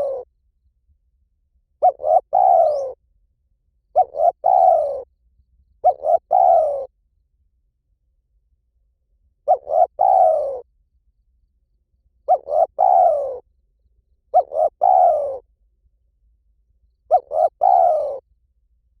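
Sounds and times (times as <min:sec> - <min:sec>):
dove cooing: 0:00.0 - 0:00.3, 0:01.8 - 0:03.0, 0:03.9 - 0:05.1, 0:05.8 - 0:06.9, 0:09.4 - 0:10.7, 0:12.2 - 0:13.5, 0:14.3 - 0:15.5, 0:17.1 - 0:18.3.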